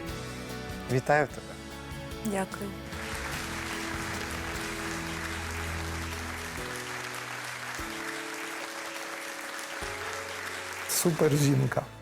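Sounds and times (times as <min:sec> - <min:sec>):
background music with held chords: 0:00.0 - 0:12.0
applause: 0:02.9 - 0:12.0.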